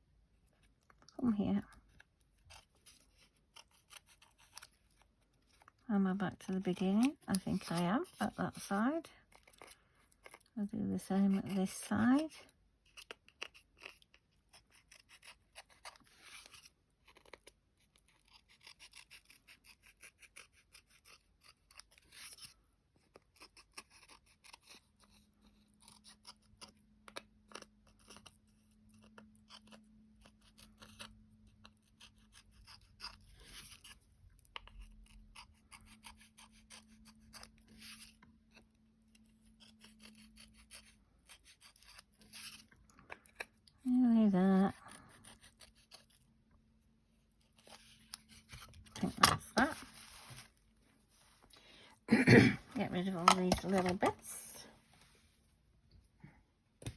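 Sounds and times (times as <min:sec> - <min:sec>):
small scissors snipping paper: 0:01.6 - 0:05.8, 0:06.4 - 0:10.6, 0:11.2 - 0:43.8, 0:44.6 - 0:46.2.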